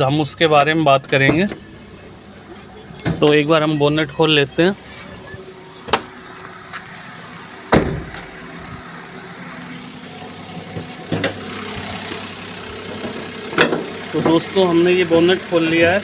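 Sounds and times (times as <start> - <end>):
small car engine idling: 0.0 - 16.0
loud thump: 7.7 - 8.3.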